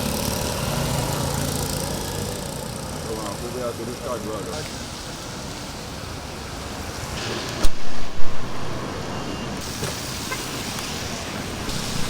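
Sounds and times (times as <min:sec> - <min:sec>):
street traffic noise: 0:00.0 - 0:12.0.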